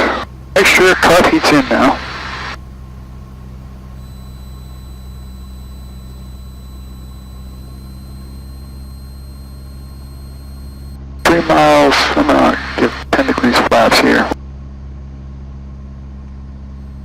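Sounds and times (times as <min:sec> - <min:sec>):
propeller plane engine drone: 0:00.0 - 0:17.0
faint high-pitched tones: 0:03.7 - 0:14.4.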